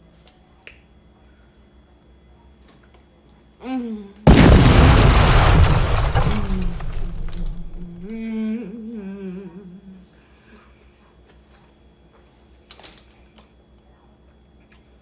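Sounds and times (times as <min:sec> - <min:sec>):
woman humming: 0:03.6 - 0:04.2, 0:08.2 - 0:10.0.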